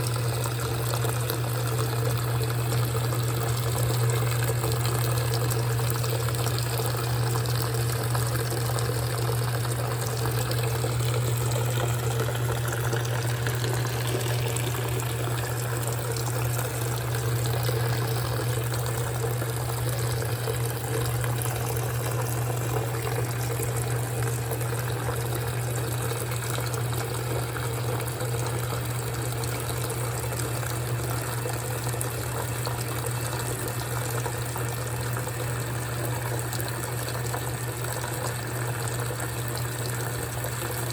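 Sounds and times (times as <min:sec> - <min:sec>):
washing machine motor hum: 0:00.0 - 0:40.9
water moving in tub: 0:00.0 - 0:40.9.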